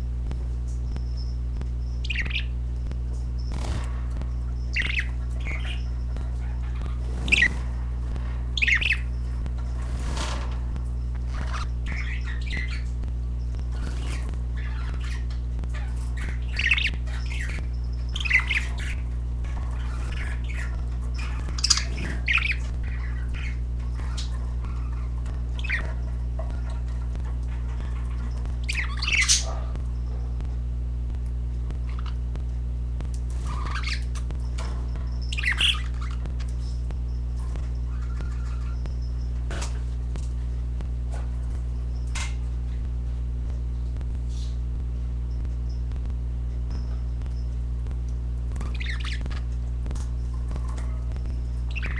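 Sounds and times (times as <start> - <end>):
low electrical hum: 0.0 - 51.9
budgerigars chirping and squawking: 0.7 - 30.6, 31.3 - 44.7, 45.3 - 51.9.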